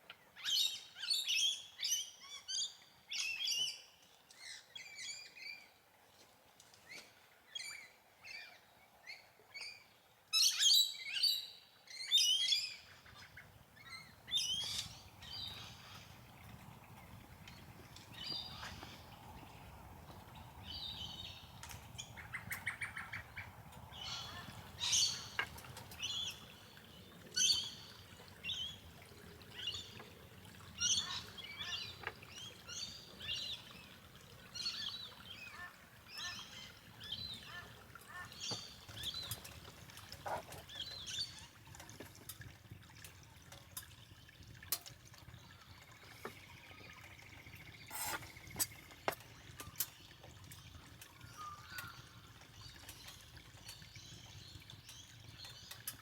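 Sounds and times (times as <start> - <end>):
bird chirping: 12.2 - 39.6.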